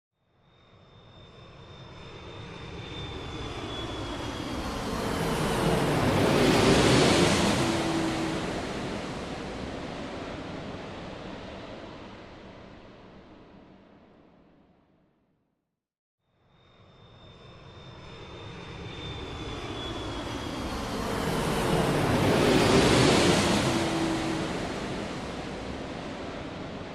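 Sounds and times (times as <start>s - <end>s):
airplane engine flyover: 0.5s - 14.6s, 16.6s - 26.9s
high engine whine: 1.5s - 11.1s, 17.4s - 26.9s.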